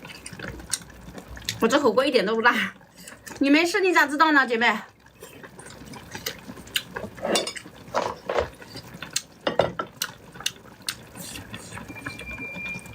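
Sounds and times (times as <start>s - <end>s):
utensils clinking against pot: 7.2s - 8.8s.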